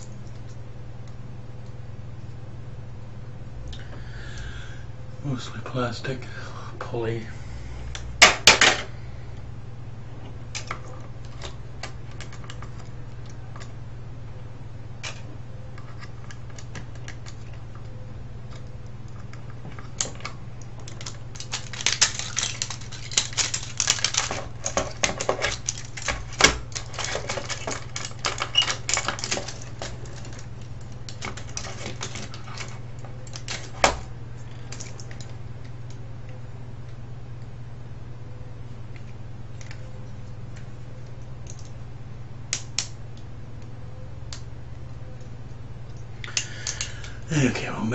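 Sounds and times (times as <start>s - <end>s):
low hum: 0.0s - 47.9s
small plastic parts clicking: 18.5s - 34.0s.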